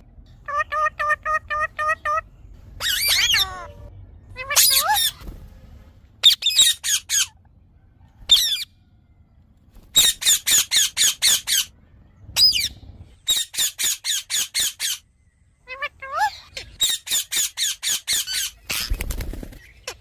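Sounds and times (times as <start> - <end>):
parakeet squawking: 0.4 - 5.2, 6.2 - 7.4, 10.0 - 11.7, 12.4 - 15.0, 15.6 - 19.0.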